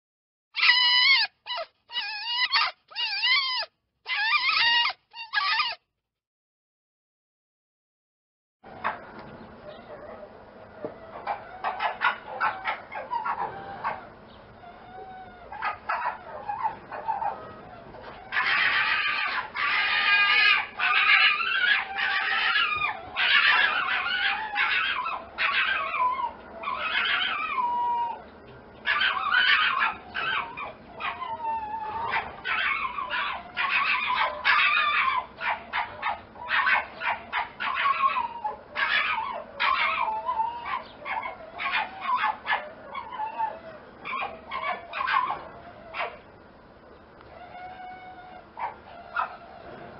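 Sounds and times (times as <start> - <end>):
fox whining calls: 0.6 - 5.8, 10.8 - 46.2
fox yipping and chattering: 0.6 - 5.8, 10.8 - 46.2.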